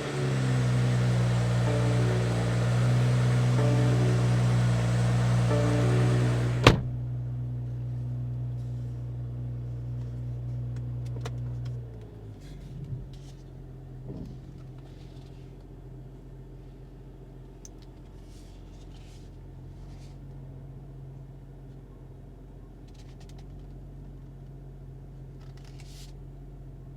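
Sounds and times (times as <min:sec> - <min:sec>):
car engine idling: 0:00.0 - 0:07.8.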